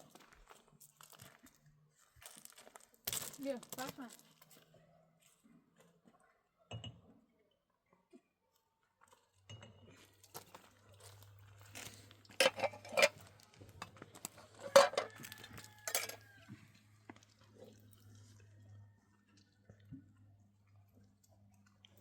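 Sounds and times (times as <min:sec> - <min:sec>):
dishes and utensils clinking: 0:12.4 - 0:16.3.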